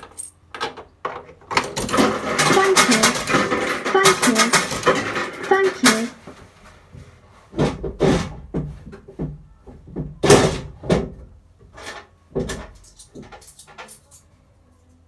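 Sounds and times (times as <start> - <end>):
irregular knocks and clunks: 7.5 - 13.4.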